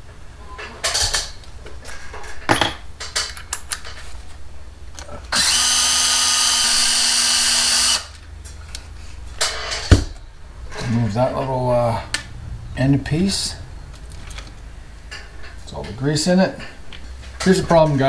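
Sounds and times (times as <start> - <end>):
small electric drill running: 5.3 - 8.2.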